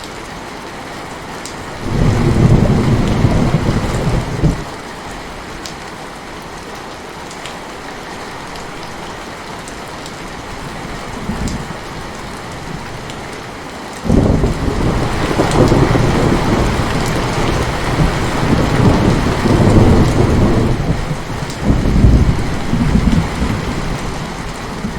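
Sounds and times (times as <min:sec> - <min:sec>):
heavy rain falling: 0:00.0 - 0:24.9
thunder rumbling: 0:01.8 - 0:04.7, 0:14.1 - 0:24.9.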